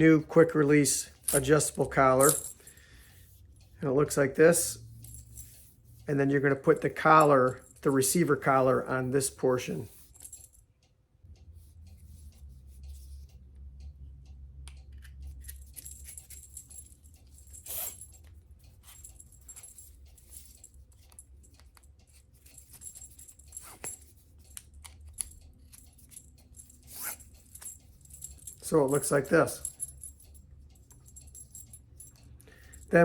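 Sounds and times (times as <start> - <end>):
light metal jingling: 0.8 - 2.9, 4.1 - 8.3, 15.4 - 33.0.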